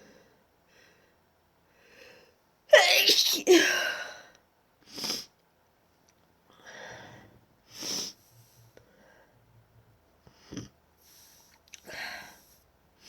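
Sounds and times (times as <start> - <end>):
person sniffling and breathing: 4.9 - 5.3, 6.6 - 9.3, 10.3 - 12.7.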